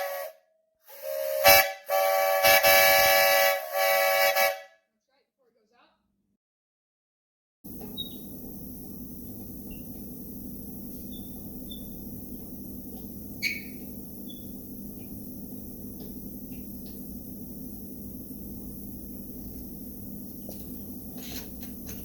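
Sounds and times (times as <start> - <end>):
steady low hum: 7.7 - 22.0.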